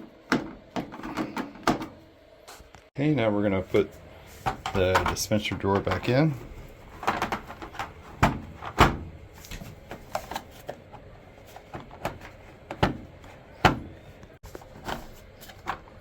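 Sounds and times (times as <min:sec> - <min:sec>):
plastic drawer knocking and clunking: 0:04.5 - 0:06.3, 0:07.0 - 0:09.2, 0:11.6 - 0:14.1.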